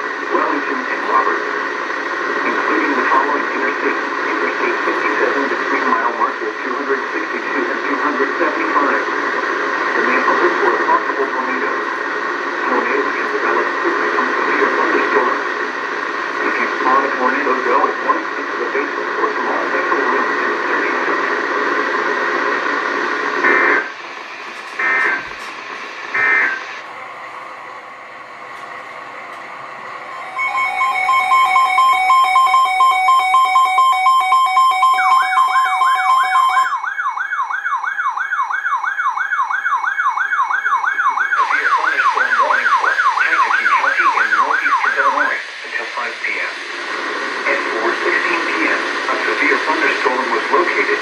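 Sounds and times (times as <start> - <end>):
radio static: 0.0 - 36.7, 41.3 - 51.0
wavering siren-like alarm: 26.1 - 45.0
steady electronic alert tone: 30.0 - 36.8.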